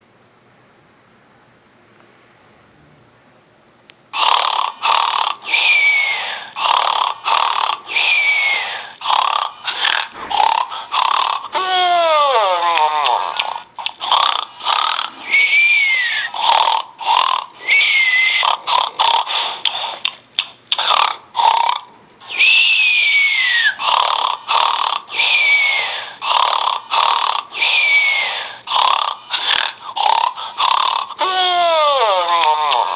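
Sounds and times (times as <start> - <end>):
loud snoring: 4.2 - 32.9
falling whistles: 5.5 - 6.4, 8.0 - 8.8, 15.2 - 16.4, 17.6 - 18.5, 22.3 - 23.8, 25.2 - 25.9, 27.6 - 28.4.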